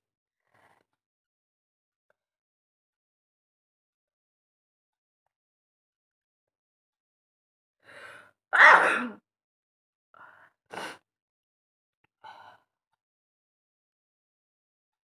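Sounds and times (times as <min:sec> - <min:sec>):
woman sneezing: 0:08.6 - 0:09.2.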